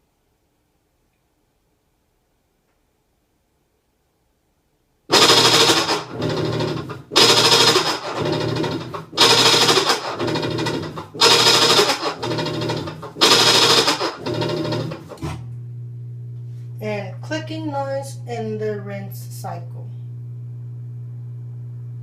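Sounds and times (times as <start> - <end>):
washing machine grinding: 5.1 - 15.5.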